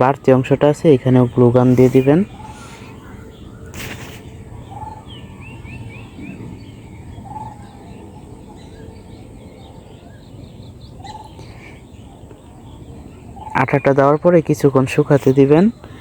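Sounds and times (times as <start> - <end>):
low ambient rumble: 0.0 - 15.9
birds chirping: 0.0 - 16.0
short bird calls: 1.2 - 8.9, 11.0 - 13.9.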